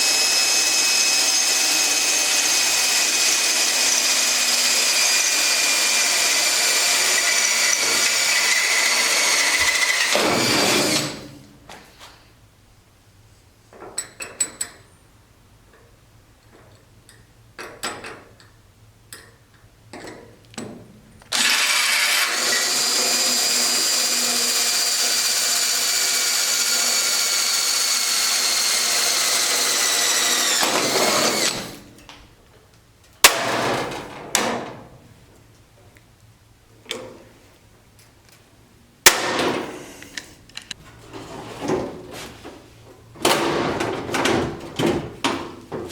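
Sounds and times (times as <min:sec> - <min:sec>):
power drill drilling: 0:00.0 - 0:11.3, 0:21.3 - 0:31.8.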